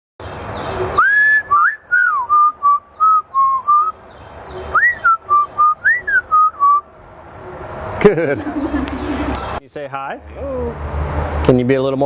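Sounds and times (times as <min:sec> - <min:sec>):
parrot whistling a tune: 0:01.0 - 0:03.9, 0:04.8 - 0:06.8.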